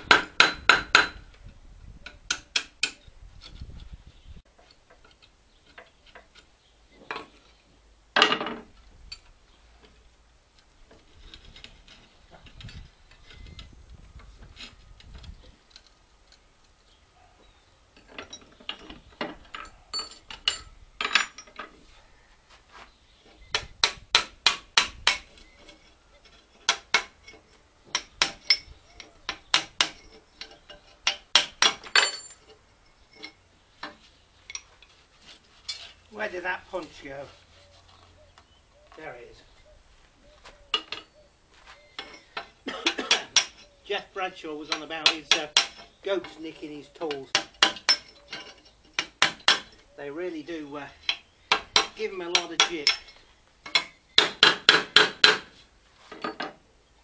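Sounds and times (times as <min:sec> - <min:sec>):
hammer striking a metal punch: 0:00.0 - 0:01.2.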